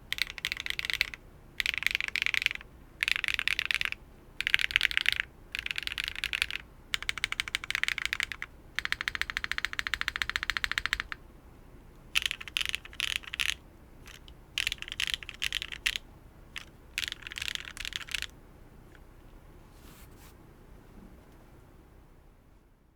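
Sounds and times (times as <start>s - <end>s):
typing on mechanical keyboard: 0.1s - 11.2s, 12.2s - 18.3s.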